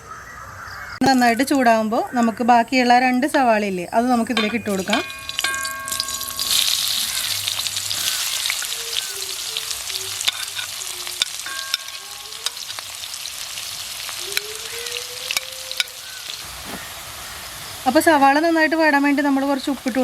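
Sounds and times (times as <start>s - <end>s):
onions sizzling in oil: 4.3s - 20.0s
utensil clicking against pan: 10.1s - 12.8s, 14.3s - 16.1s.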